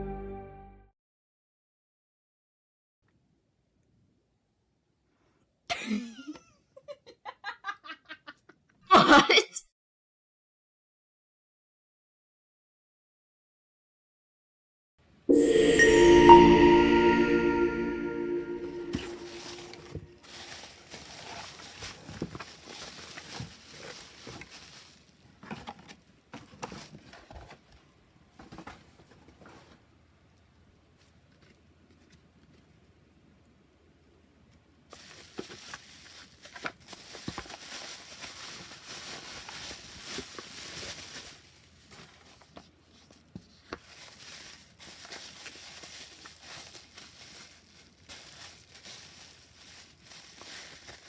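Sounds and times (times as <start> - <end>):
packaging rustling: 20.2 - 25.1, 35.0 - 51.0.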